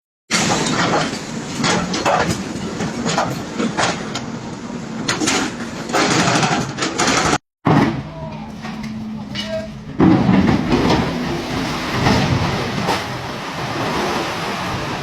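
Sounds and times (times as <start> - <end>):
excavator engine under load: 5.2 - 15.0.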